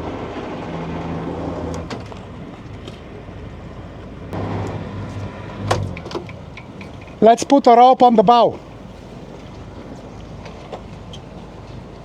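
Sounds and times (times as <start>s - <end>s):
diesel engine running: 0.0s - 7.4s.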